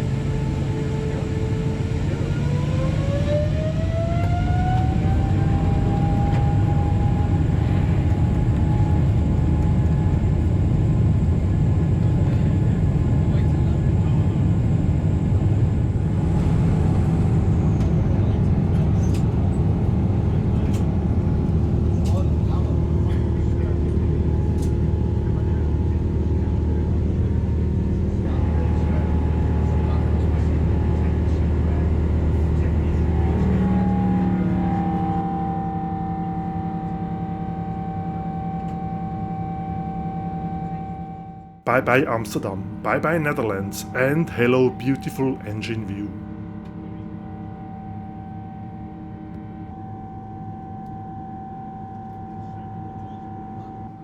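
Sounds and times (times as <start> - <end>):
jet engine rumble in cabin: 0.0 - 41.0.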